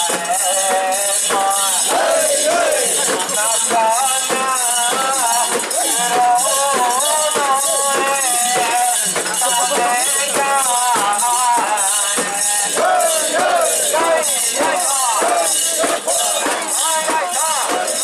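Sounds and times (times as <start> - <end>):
people singing and chanting: 0.0 - 18.0.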